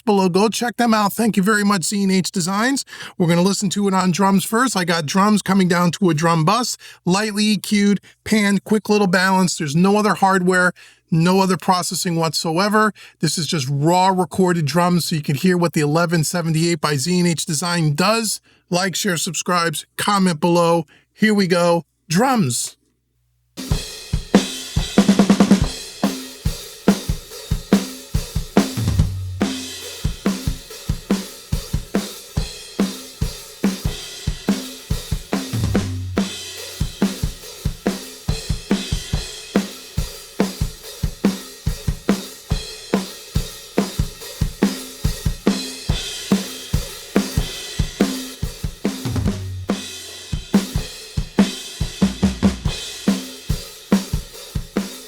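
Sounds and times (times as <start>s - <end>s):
drum kit groove: 23.6s - 55.0s
tom fill: 23.6s - 55.0s.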